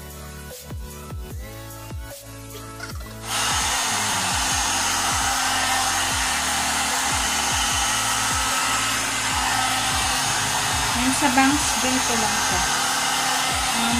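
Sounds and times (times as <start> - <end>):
hot air brush blowing: 3.2 - 13.9.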